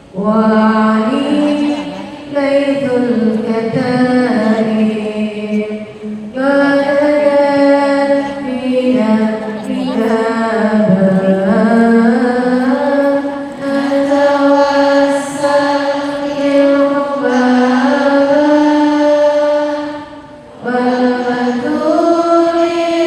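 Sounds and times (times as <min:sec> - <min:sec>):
woman chanting: 0:00.1 - 0:23.0.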